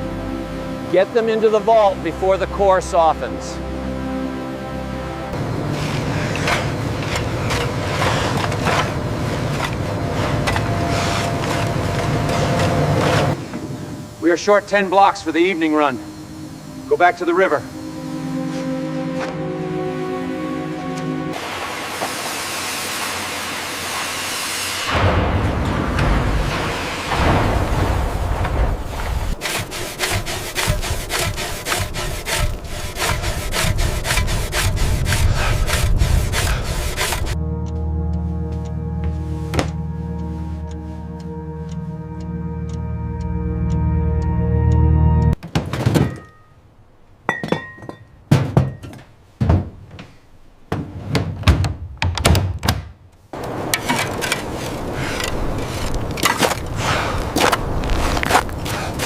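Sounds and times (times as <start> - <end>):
steady noisy bed: 4.0 - 37.4
saw cutting ice: 5.7 - 13.4, 29.3 - 37.4
knocks and clinks: 45.8 - 46.6, 47.3 - 49.1
heavy thunks and knocks: 47.3 - 53.0.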